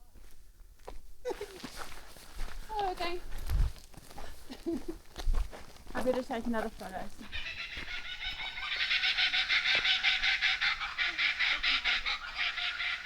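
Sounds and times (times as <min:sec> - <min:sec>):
flock of birds chattering: 0:06.0 - 0:13.0.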